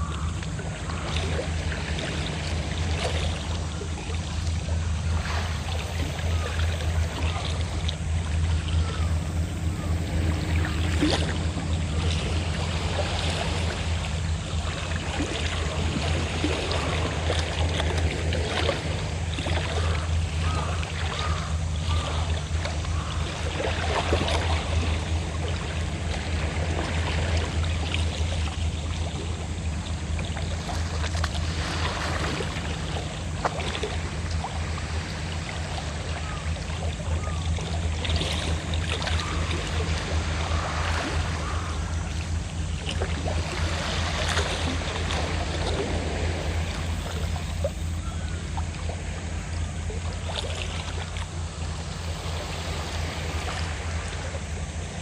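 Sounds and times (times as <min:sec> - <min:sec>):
boat engine droning: 0:00.0 - 0:55.0
sea waves splashing: 0:01.3 - 0:22.0, 0:38.1 - 0:55.0.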